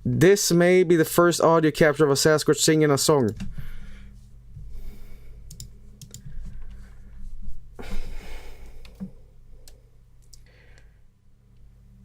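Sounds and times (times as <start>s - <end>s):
steady low hum: 0.0s - 12.0s
keyboard and mouse clicks: 5.5s - 6.3s, 8.8s - 10.5s.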